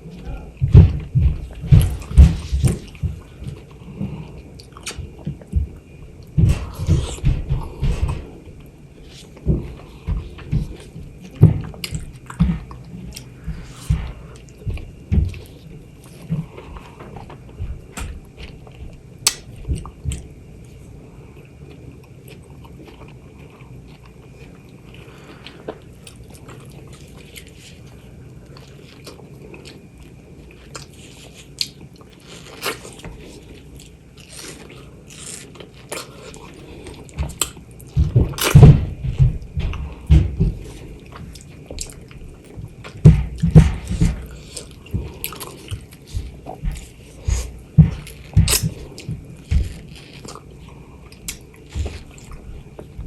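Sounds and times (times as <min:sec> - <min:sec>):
person chewing and biting mango: 0:21.4 - 0:38.6, 0:39.4 - 0:53.0.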